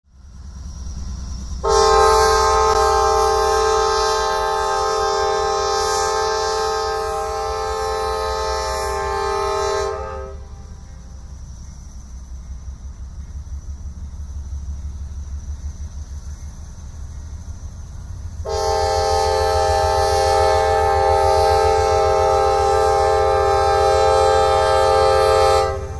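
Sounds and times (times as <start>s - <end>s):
diesel locomotive engines rumbling: 0.0s - 25.9s
locomotive air horn chord: 1.6s - 10.8s, 18.4s - 25.9s.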